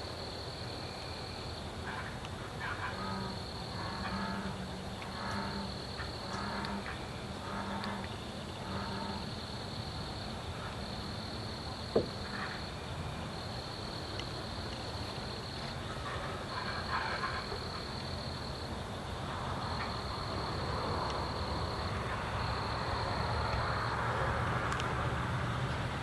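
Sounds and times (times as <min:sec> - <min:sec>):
crickets trilling: 0:00.0 - 0:25.9
low pulsed animal croaking: 0:02.6 - 0:09.4.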